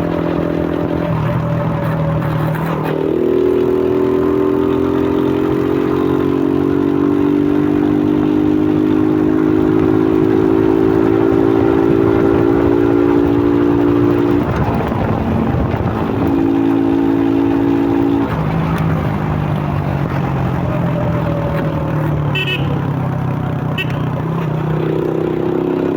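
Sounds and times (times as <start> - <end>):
motorcycle engine running: 0.0 - 25.9
loud multi-tone horn blaring: 22.2 - 23.0, 23.6 - 24.3.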